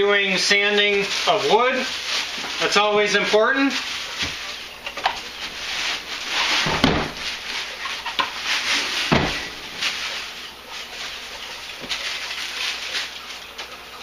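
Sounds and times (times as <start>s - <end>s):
packaging rustling and scraping: 0.7s - 13.8s
dull thumps: 4.2s - 7.4s, 9.1s - 9.9s.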